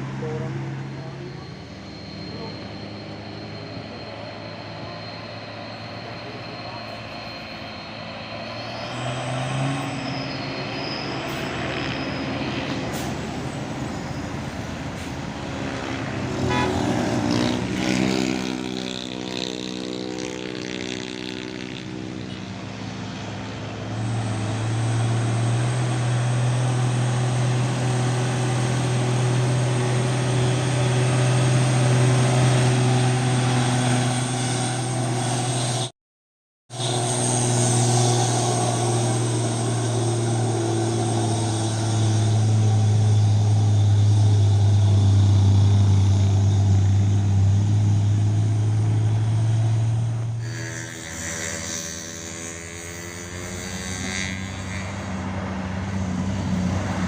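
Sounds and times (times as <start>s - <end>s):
diesel truck engines climbing: 0.0s - 35.9s, 36.7s - 57.0s
vehicle passing: 14.8s - 35.8s.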